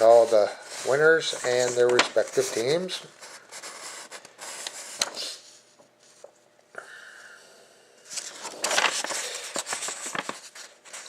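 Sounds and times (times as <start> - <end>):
paper rustling and scraping: 0.0 - 5.3, 8.1 - 11.0.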